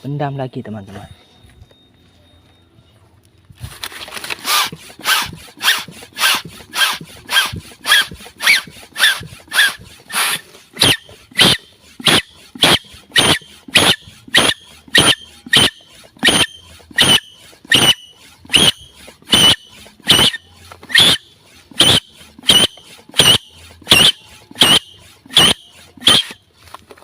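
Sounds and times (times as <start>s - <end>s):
hand air pump strokes: 3.6s - 27.0s
squeaky whistle: 10.8s - 26.4s.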